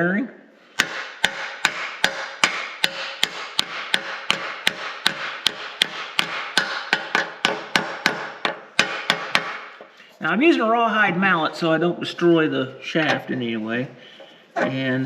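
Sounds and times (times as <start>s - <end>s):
mallet tapping metal bearing: 0.8s - 9.6s.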